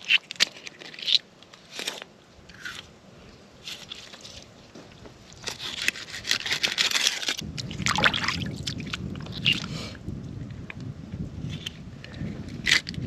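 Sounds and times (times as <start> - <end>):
scraping and crunching: 0.0 - 2.9, 3.6 - 9.7
low rumble: 7.4 - 12.6.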